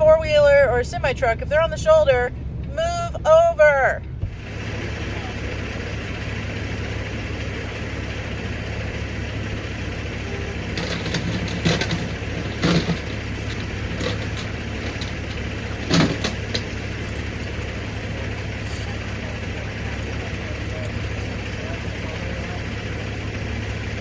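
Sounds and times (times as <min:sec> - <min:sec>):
diesel engine idling: 0:00.0 - 0:24.0
tire chains clanking: 0:07.0 - 0:24.0.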